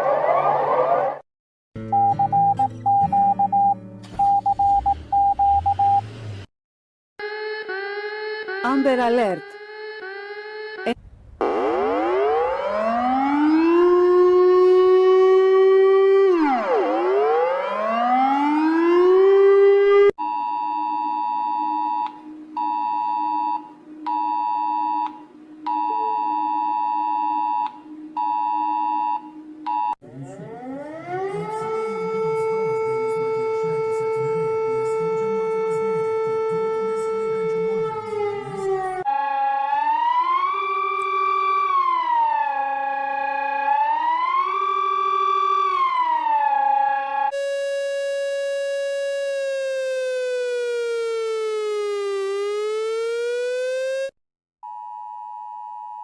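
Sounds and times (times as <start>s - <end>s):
siren winding up: 0.0s - 1.2s, 7.2s - 20.1s, 21.0s - 54.1s
multi-tone alert blasts: 47.3s - 54.1s.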